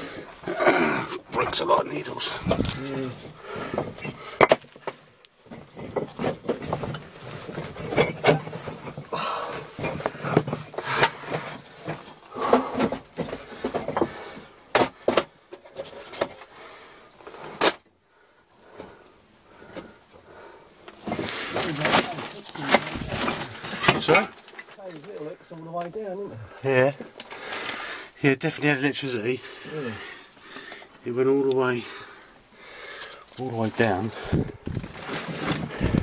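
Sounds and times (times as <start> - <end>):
knocks and scrapes: 1.4 - 16.5, 20.9 - 25.2, 33.5 - 36.0
rustling: 1.4 - 17.6, 18.3 - 36.0.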